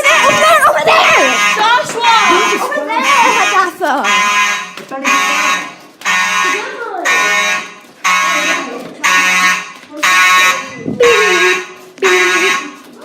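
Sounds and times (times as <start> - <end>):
fire alarm horns pulsing: 0.0 - 13.0.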